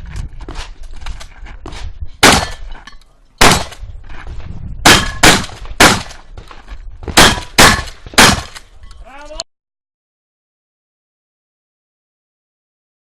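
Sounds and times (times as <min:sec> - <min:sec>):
shotgun shots: 0:02.2 - 0:02.6, 0:03.4 - 0:03.8, 0:04.8 - 0:06.2, 0:07.1 - 0:08.6.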